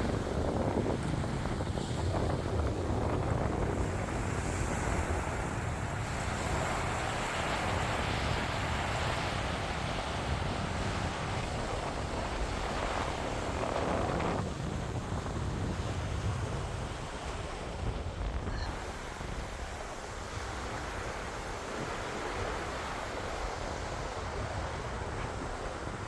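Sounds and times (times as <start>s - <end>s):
wind buffeting microphone: 0.0s - 26.0s
ocean surf hissing: 16.5s - 26.0s.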